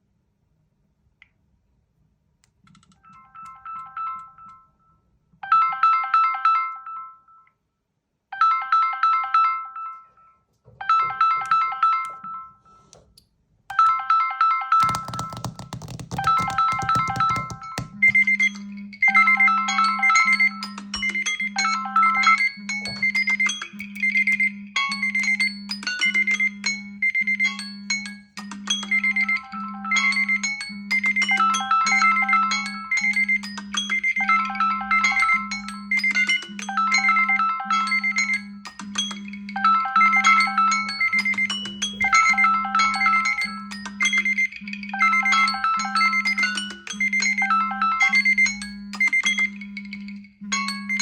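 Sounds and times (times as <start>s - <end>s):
synthesized ringtone melody: 3.0s - 7.5s, 8.4s - 12.9s, 13.7s - 51.0s
higher ringtone: 13.8s - 25.5s, 26.1s - 51.0s.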